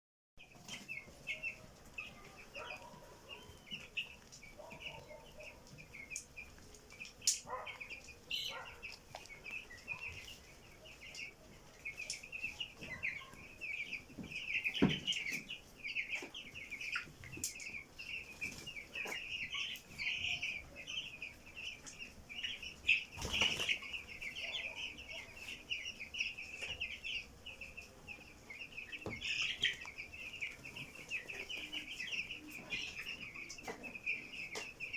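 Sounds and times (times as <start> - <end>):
chickens calling: 0.4 - 34.9.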